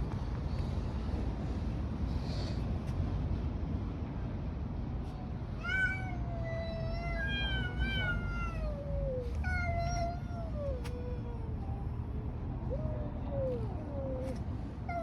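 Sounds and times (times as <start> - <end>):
low background rumble: 0.0 - 15.0
cats yowling: 5.6 - 11.9, 12.6 - 15.0.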